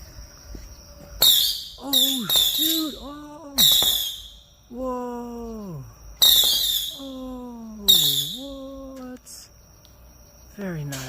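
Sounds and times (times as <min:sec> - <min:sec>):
fireworks crackling bursts: 0:01.2 - 0:04.4, 0:06.2 - 0:07.0, 0:07.9 - 0:09.4.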